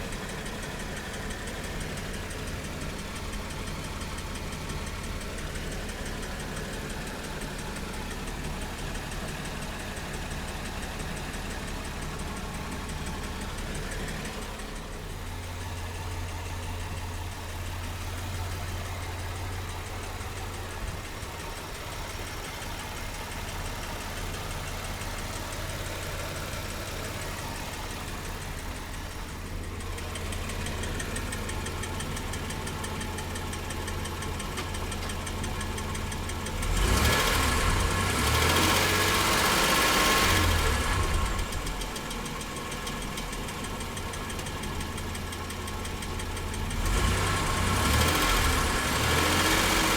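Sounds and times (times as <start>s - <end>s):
car engine idling with knock: 0.0s - 49.9s.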